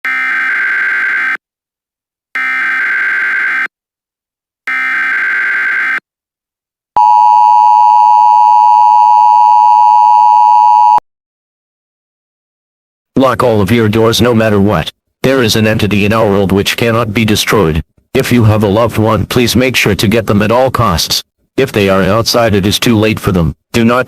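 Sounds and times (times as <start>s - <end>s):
two-tone attention signal: 7.0s - 11.0s.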